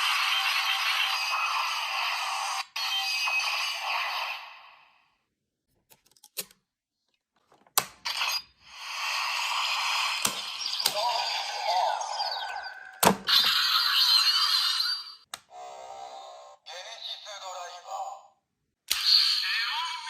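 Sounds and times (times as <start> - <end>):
electronic toy sound effect: 0.0 - 4.6, 8.1 - 17.7, 18.9 - 20.0.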